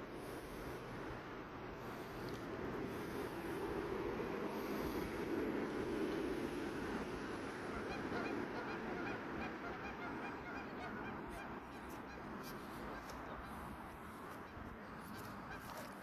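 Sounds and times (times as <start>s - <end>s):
low steady rumble: 0.0s - 15.6s
geese honking: 7.6s - 15.9s.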